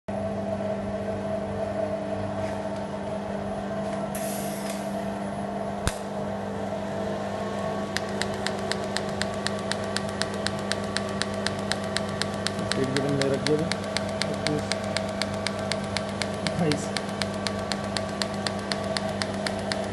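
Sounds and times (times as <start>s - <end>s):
regular ticking: 8.0s - 19.9s
sharp click: 8.0s - 19.9s
welding robot electrical hum: 8.1s - 19.9s.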